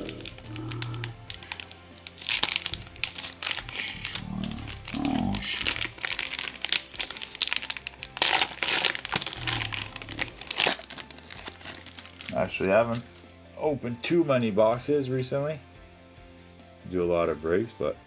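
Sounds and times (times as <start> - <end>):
foil wrapper crinkling and tearing: 0.0 - 13.4.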